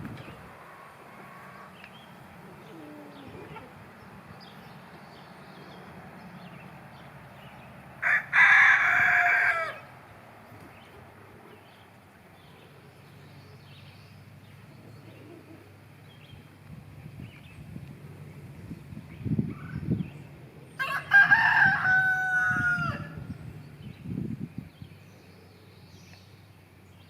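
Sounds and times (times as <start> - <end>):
rooster crowing: 8.0 - 9.9, 20.8 - 23.2.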